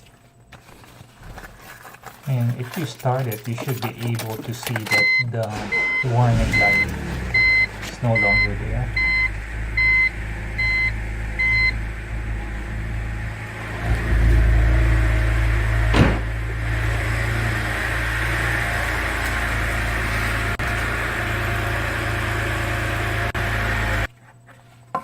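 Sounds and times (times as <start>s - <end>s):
car engine starting and idling: 4.1s - 24.1s
dashboard warning chime beeps: 4.6s - 11.8s.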